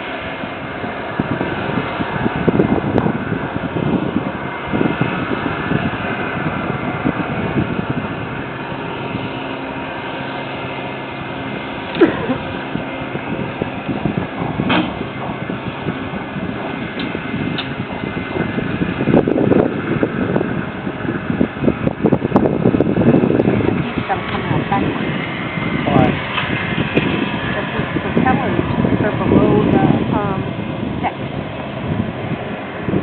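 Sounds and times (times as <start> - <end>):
machinery hum and rumble: 0.0 - 33.0.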